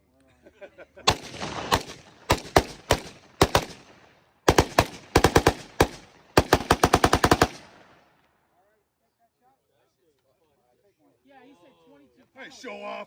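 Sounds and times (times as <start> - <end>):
rapid gunfire: 1.1 - 8.0
gunshots: 1.1 - 8.1.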